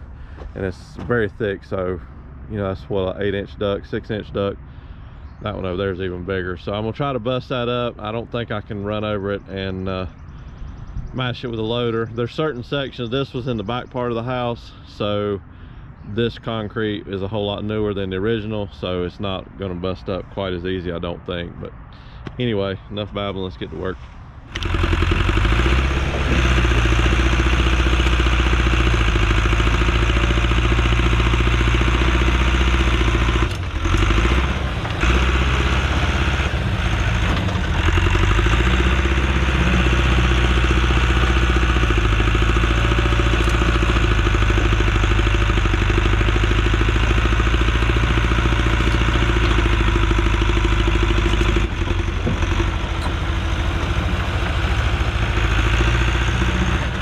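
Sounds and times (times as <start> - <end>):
track loader engine running: 0.0 - 21.0, 21.7 - 57.0.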